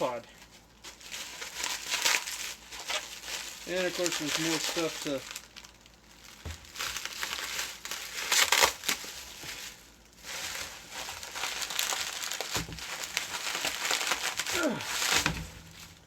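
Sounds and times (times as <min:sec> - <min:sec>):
packaging rustling in cardboard box: 0:00.4 - 0:16.0
dull thump: 0:15.2 - 0:15.9.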